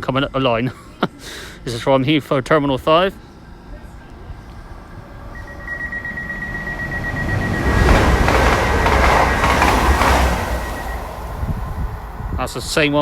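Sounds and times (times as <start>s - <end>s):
electric train rushing and rumbling: 3.2s - 13.0s
steady high tone: 3.6s - 12.7s.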